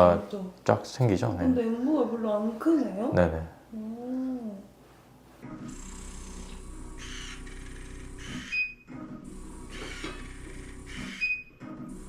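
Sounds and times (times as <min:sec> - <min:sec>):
machine whirring: 0:05.4 - 0:12.0.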